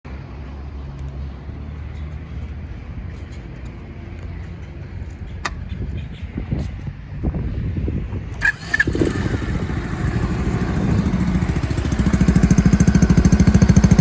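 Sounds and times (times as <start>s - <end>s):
small motorcycle engine idling: 8.4s - 14.0s.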